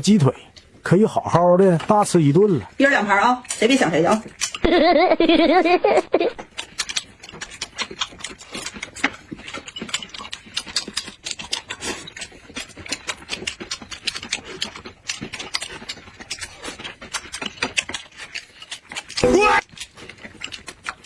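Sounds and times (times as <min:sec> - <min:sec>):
wet chewing and lip smacking: 0:03.4 - 0:04.7, 0:06.3 - 0:21.0.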